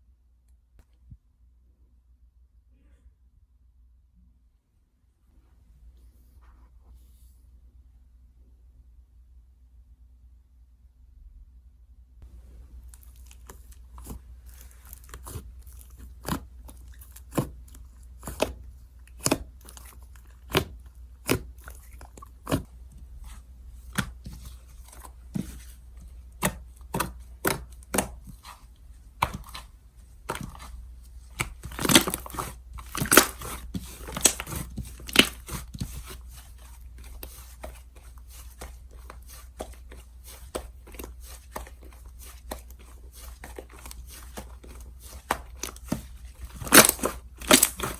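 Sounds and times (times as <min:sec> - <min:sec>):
slime popping and crackling: 0:12.8 - 0:47.9.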